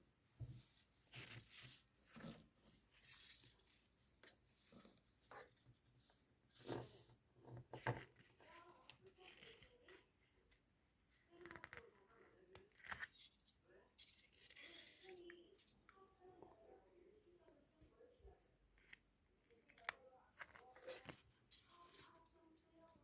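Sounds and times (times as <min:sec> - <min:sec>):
rustling and clicking from handling: 0:18.8 - 0:23.0.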